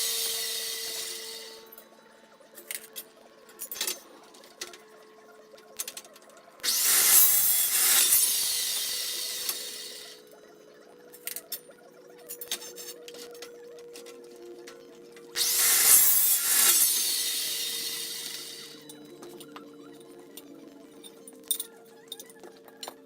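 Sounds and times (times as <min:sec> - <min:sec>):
cold saw cutting steel: 0:00.0 - 0:01.8, 0:06.6 - 0:10.3, 0:15.3 - 0:19.4.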